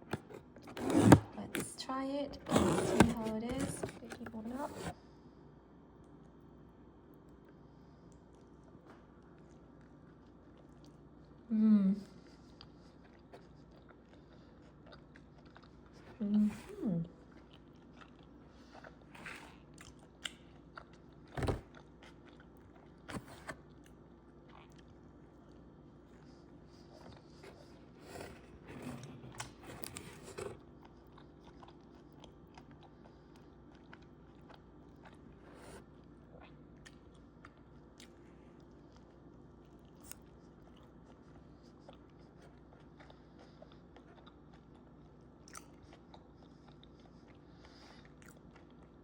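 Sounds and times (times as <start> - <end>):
faint steady hum: 0.0 - 49.0
person chewing: 12.4 - 16.1, 17.2 - 49.0.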